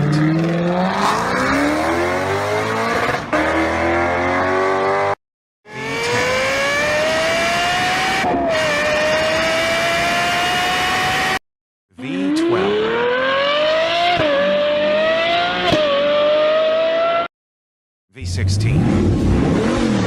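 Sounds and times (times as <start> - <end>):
higher-pitched racing engine revving: 0.0 - 11.4, 12.0 - 17.3
racing engine accelerating: 0.0 - 11.4, 12.0 - 17.3, 18.4 - 20.0.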